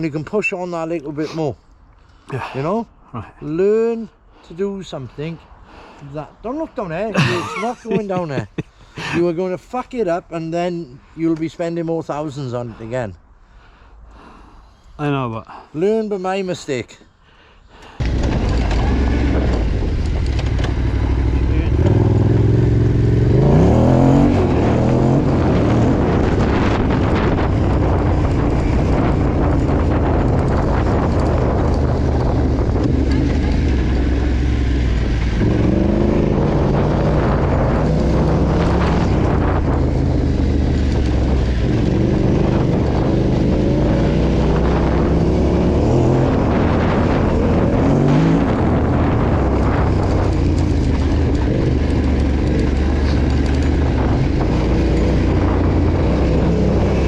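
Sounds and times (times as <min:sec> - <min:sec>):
motorcycle engine revving: 0:18.0 - 0:57.0.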